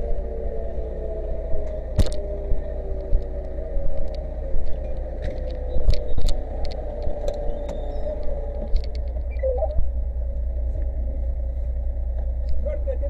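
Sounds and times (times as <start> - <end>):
fire engine motor running: 0.0 - 13.0.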